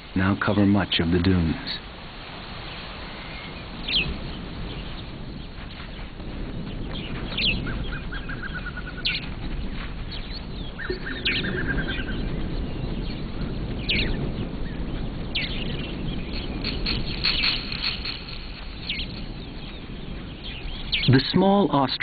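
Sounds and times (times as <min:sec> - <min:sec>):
birds chirping: 0:00.0 - 0:22.0
bird trills: 0:07.0 - 0:09.3, 0:10.1 - 0:21.3.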